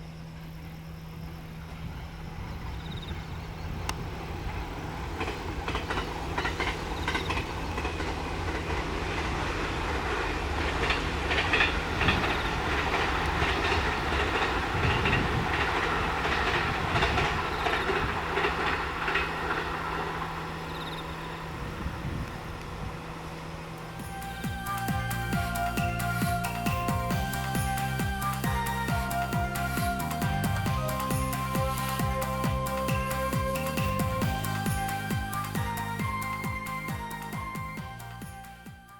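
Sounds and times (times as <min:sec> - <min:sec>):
train wheels clacking over rails: 0:03.9 - 0:21.2.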